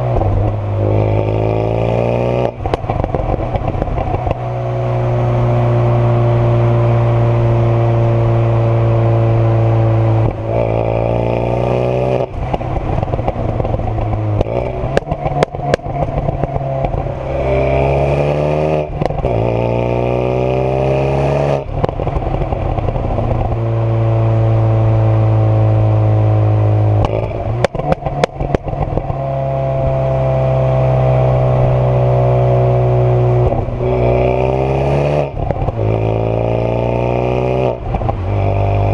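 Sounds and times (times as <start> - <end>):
exhaust pops and crackles: 0.0 - 1.4, 2.4 - 4.6, 10.2 - 10.8, 11.4 - 17.6, 18.8 - 19.9, 21.6 - 24.6, 26.9 - 30.1, 33.3 - 34.2, 35.2 - 38.9
car engine revving: 0.0 - 38.9.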